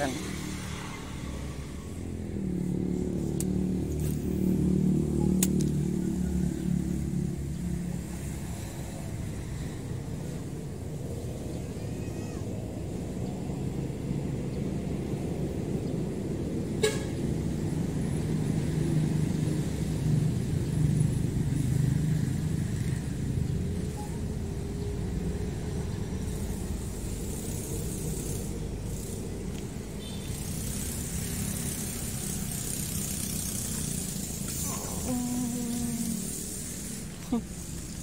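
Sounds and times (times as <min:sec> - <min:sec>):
vehicle passing by: 0:00.0 - 0:11.8, 0:12.5 - 0:38.0
road traffic: 0:00.0 - 0:38.0
sharp click: 0:05.4 - 0:05.8.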